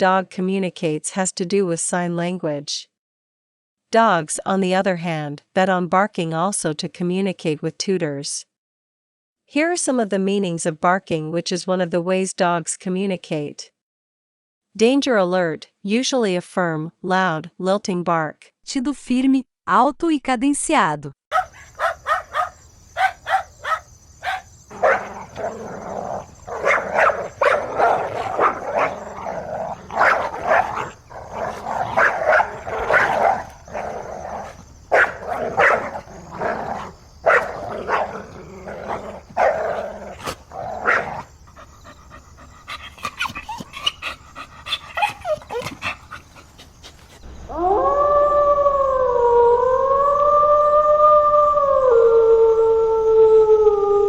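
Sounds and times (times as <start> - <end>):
dog yipping: 21.3 - 29.3, 40.2 - 47.0
dog barking loudly: 21.3 - 33.6, 34.9 - 41.3
dog howling: 21.3 - 33.9, 42.8 - 46.3, 47.5 - 54.0.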